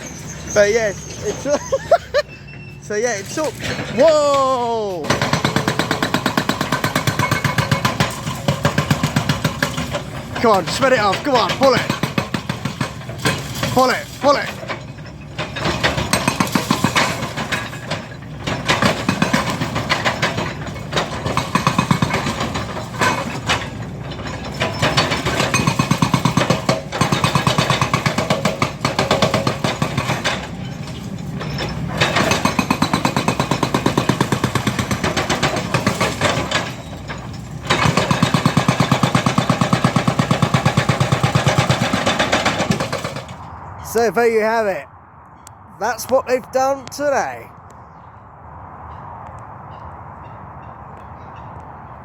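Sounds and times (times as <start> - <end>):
breaker hammering concrete: 2.9 - 14.8, 15.4 - 30.8, 31.4 - 43.3.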